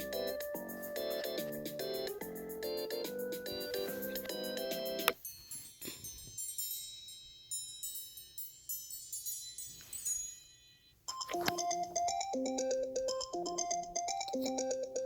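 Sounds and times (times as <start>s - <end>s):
repeating ringtone melody: 0.0s - 9.7s, 10.5s - 15.0s
tinkling chime notes: 0.0s - 15.0s.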